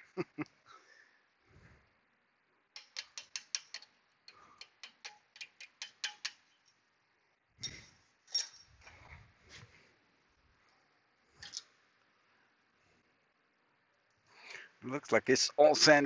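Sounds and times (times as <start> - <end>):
sharp metallic clicks: 2.7 - 6.8.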